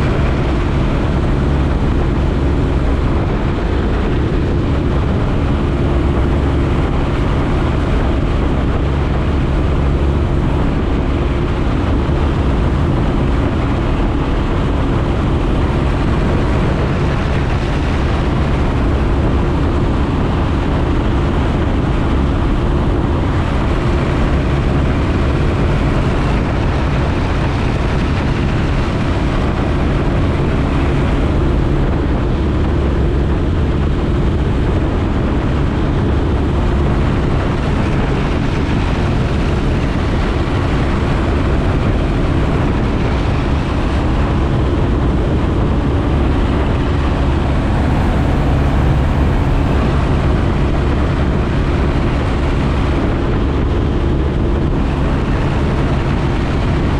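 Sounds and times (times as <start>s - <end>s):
plane engine and propeller: 0.0s - 56.9s
wind rushing: 41.4s - 54.2s.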